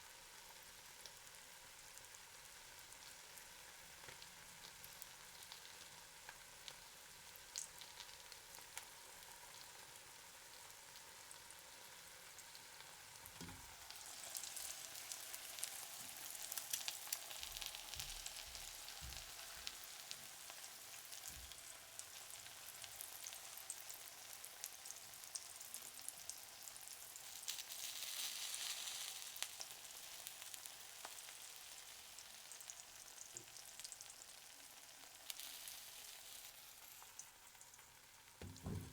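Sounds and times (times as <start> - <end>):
eggs sizzling in a pan: 0.0 - 38.9
soft low thuds: 38.4 - 38.9.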